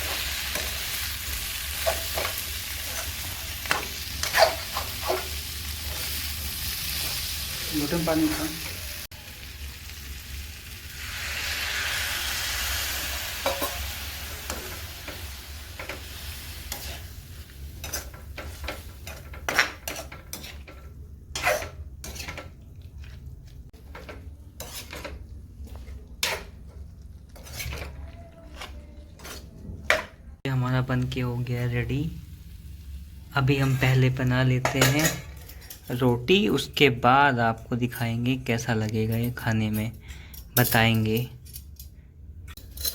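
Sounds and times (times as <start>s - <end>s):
spatula scraping a pan: 0.0s - 7.5s, 11.5s - 30.0s
food sizzling in a pan: 0.0s - 22.6s, 30.8s - 34.6s.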